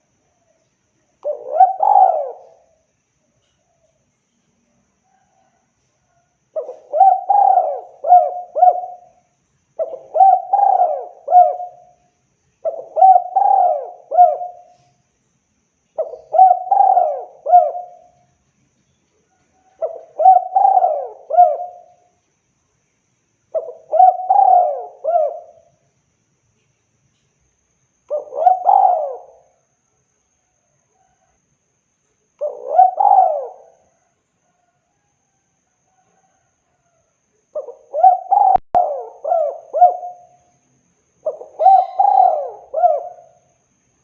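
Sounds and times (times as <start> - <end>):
dove cooing: 1.2 - 2.8, 6.5 - 9.2, 9.8 - 12.0, 12.6 - 14.9, 16.0 - 18.2, 19.6 - 22.1, 23.5 - 25.8, 28.1 - 29.6, 32.4 - 35.1, 37.5 - 40.6, 41.2 - 43.5.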